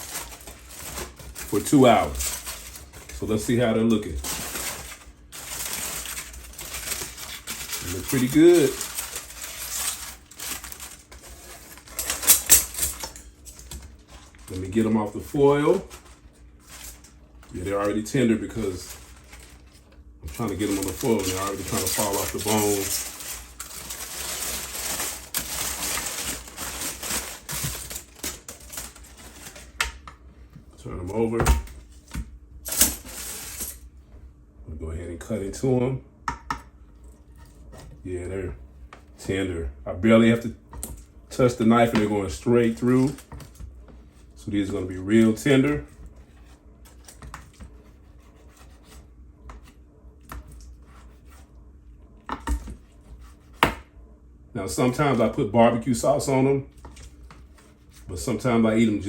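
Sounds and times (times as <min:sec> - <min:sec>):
aluminium foil crinkling: 0:00.0 - 0:30.0, 0:32.6 - 0:33.8, 0:41.4 - 0:43.6.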